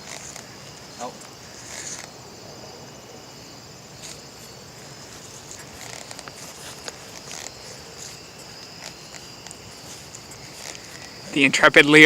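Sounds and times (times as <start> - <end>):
insect chorus: 0.0 - 12.0
light clicks and crackles: 5.1 - 11.1.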